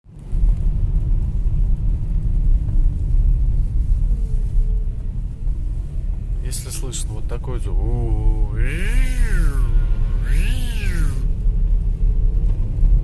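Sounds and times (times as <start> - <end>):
car engine humming: 3.3 - 12.6.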